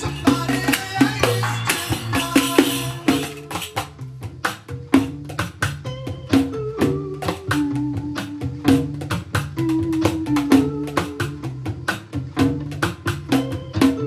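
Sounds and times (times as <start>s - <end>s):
tambourine struck by hand: 0.0s - 3.9s
pop song: 0.0s - 4.0s.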